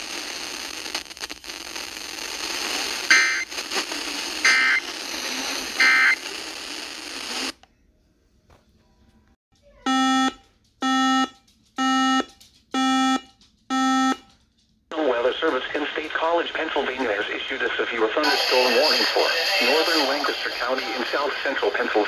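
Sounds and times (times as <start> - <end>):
radio hiss: 0.0 - 7.6, 14.9 - 22.0.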